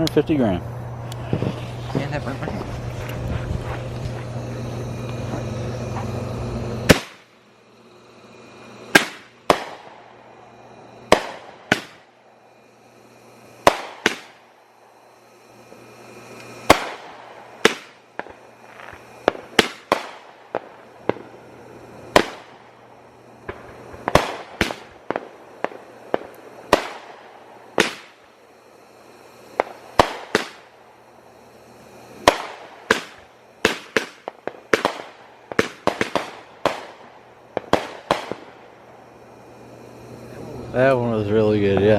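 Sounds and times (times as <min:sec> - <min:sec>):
steady rushing noise: 0:00.0 - 0:41.9
firework cake bangs: 0:06.8 - 0:07.2, 0:08.9 - 0:09.9, 0:11.1 - 0:12.0, 0:13.6 - 0:14.4, 0:16.7 - 0:21.3, 0:23.4 - 0:27.2, 0:27.8 - 0:28.2, 0:29.6 - 0:30.6, 0:32.2 - 0:37.0.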